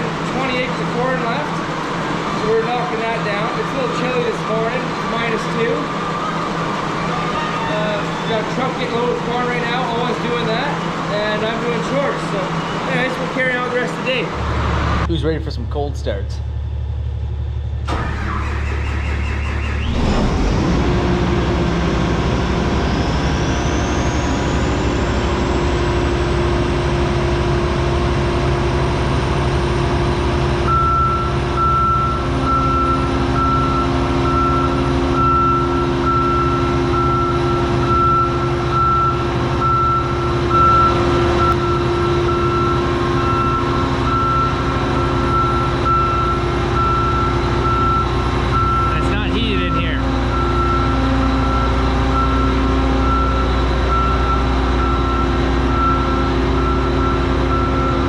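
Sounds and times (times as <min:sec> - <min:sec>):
diesel engine running: 0:00.0 - 0:58.0
warning beep: 0:30.7 - 0:58.0.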